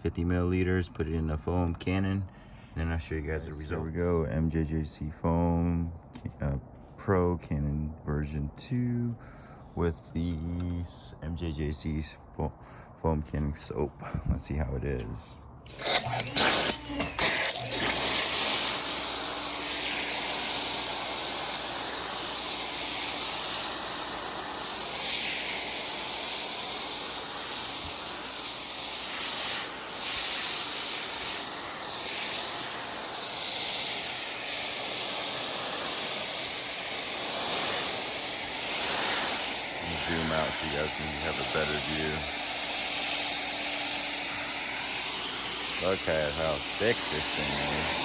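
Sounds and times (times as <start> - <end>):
hiss of foam spray: 15.7 - 48.0
pressure washer pump running: 15.7 - 48.0.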